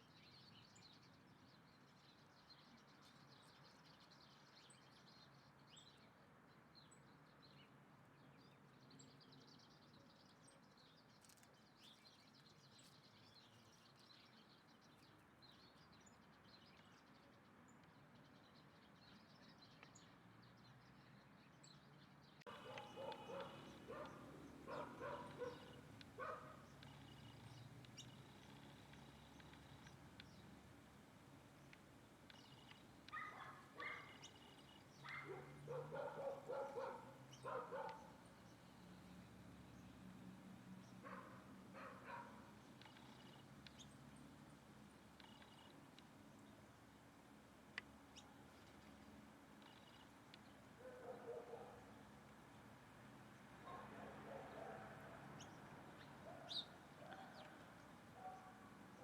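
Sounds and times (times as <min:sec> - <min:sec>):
high bird chirps: 0:31.7 - 0:38.1.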